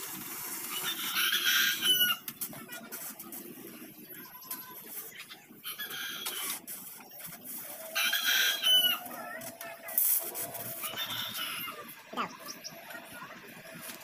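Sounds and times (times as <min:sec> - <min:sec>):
rooster crowing: 0:07.9 - 0:09.2, 0:10.8 - 0:11.9.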